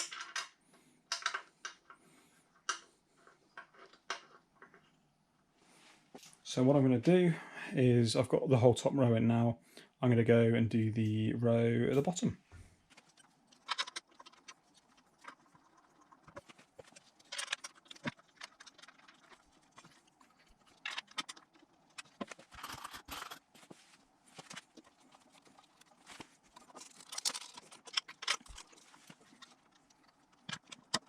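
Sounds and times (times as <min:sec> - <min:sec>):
metal fasteners clicking: 0:24.4 - 0:31.0.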